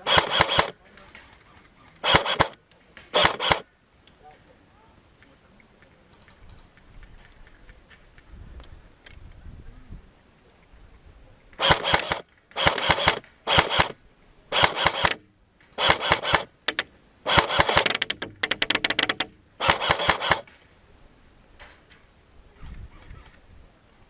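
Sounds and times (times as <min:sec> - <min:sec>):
airsoft gun firing full auto: 0:00.0 - 0:00.8, 0:02.0 - 0:03.7, 0:11.6 - 0:20.5.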